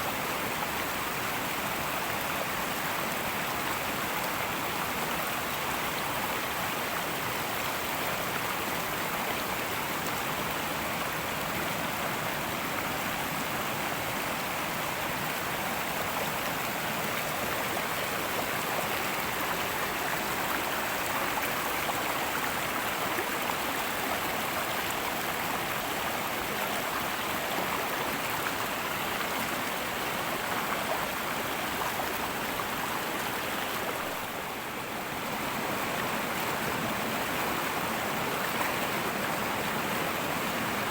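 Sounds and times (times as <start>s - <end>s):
river rushing over rocks: 0.1s - 40.9s.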